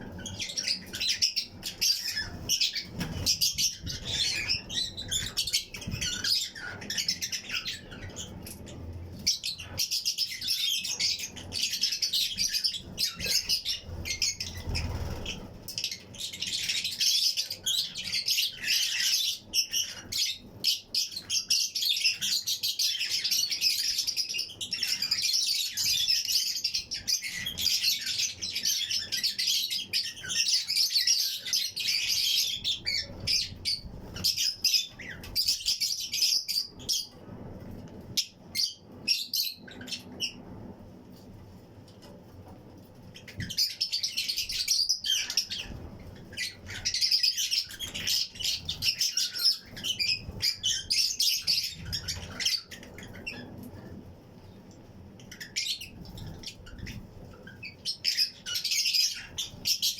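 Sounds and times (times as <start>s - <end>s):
lovebirds chirping: 0.0s - 40.7s, 43.2s - 59.9s
wing flutters: 13.2s - 15.8s.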